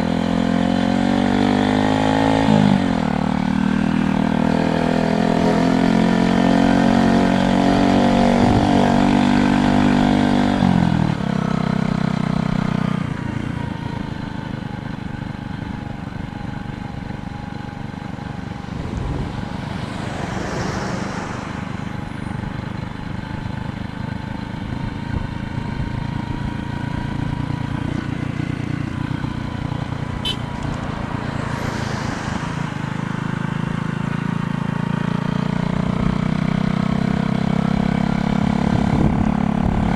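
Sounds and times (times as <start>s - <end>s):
vehicles passing: 0.0s - 11.3s, 13.2s - 36.6s
road and wind noise: 0.0s - 39.9s
vehicle engine running: 11.8s - 36.6s.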